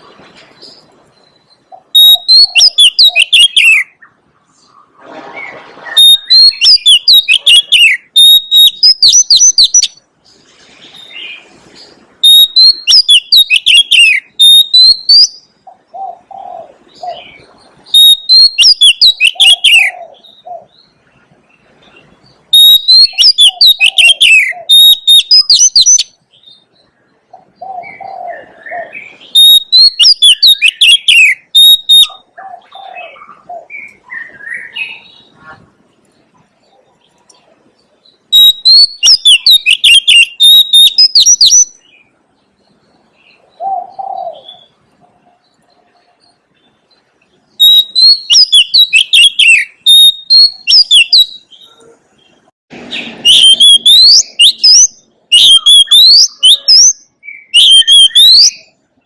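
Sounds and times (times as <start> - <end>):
soft low bird calls: 0.0 - 59.0
bird singing whistled phrases: 1.2 - 4.2, 5.9 - 10.0, 12.2 - 15.5, 17.0 - 20.5, 22.5 - 26.6, 27.6 - 32.3, 38.3 - 41.9, 47.6 - 51.8, 52.9 - 58.7.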